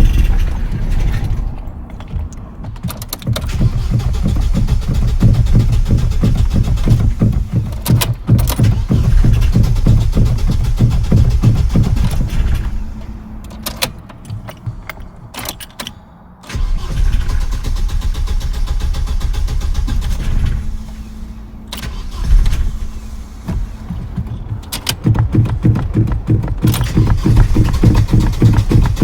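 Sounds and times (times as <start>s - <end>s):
car engine cranking: 0.0s - 29.0s
starter clicks: 0.0s - 29.0s.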